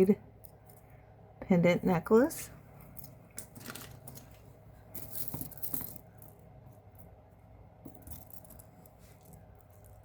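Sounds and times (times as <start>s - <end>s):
jewelry clinking and rattling: 0.3s - 1.0s, 2.7s - 7.2s, 7.8s - 10.0s.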